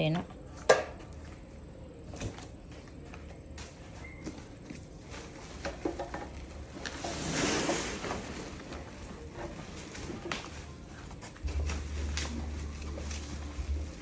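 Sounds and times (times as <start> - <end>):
ladder scraping out of packaging: 5.0 - 10.7.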